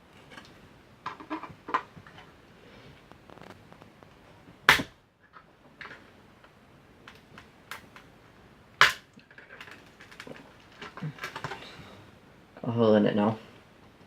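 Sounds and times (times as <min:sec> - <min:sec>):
sharp knocks of punching tool: 0:04.7 - 0:05.0.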